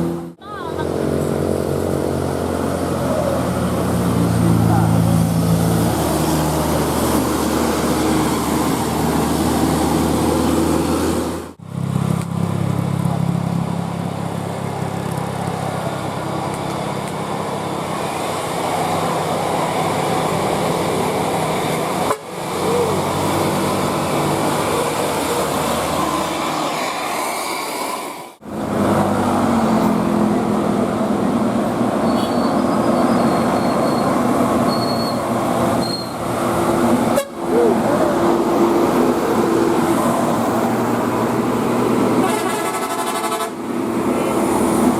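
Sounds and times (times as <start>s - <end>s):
buses in traffic: 0.0s - 44.9s
multi-tone bus horn: 22.0s - 22.4s, 32.1s - 32.6s, 37.0s - 37.8s, 42.2s - 43.8s.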